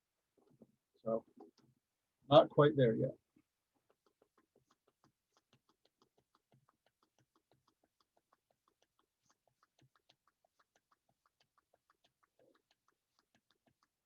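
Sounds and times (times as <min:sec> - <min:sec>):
pump clicking rapidly: 0:03.8 - 0:14.0.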